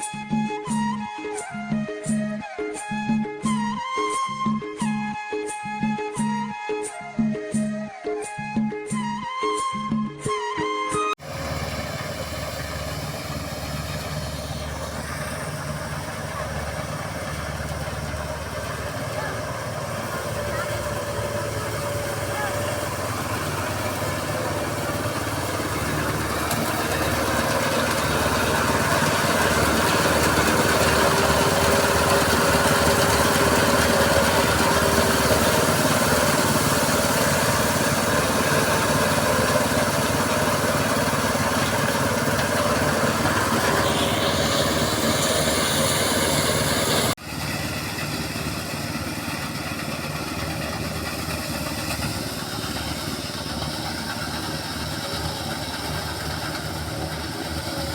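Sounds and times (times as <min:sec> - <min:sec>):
small engine running: 0:11.2 - 0:57.9.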